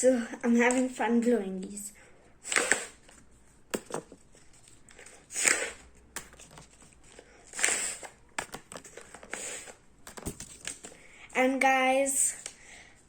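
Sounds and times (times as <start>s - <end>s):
breath blowing into paper: 2.4s - 3.1s, 5.1s - 5.9s, 7.4s - 8.2s, 9.3s - 9.8s.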